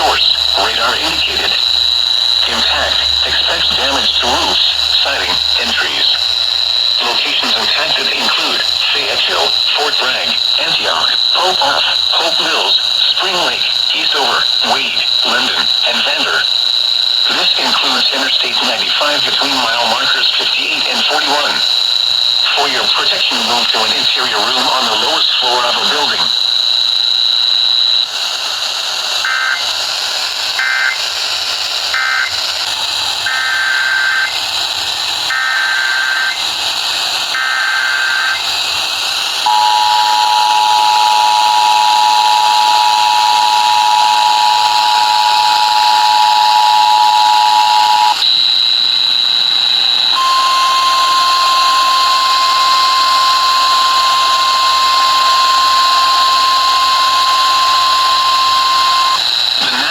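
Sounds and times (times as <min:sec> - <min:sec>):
steady alert tone: 0:00.0 - 0:10.0
two-tone attention signal: 0:00.0 - 0:16.4, 0:39.5 - 0:59.9
warbling data bursts: 0:00.0 - 0:26.5, 0:37.4 - 0:59.9
radio hiss: 0:00.0 - 0:59.9.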